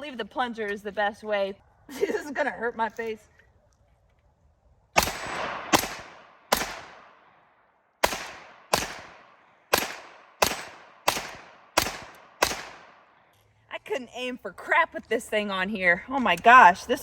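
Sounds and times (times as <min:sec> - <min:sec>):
pistol shots: 0:05.0 - 0:07.2, 0:08.0 - 0:13.2.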